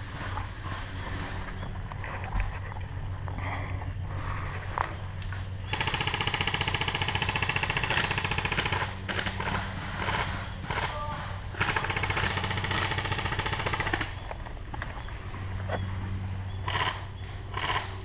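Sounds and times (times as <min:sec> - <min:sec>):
airsoft gun firing full auto: 0:05.7 - 0:14.2, 0:16.7 - 0:17.9.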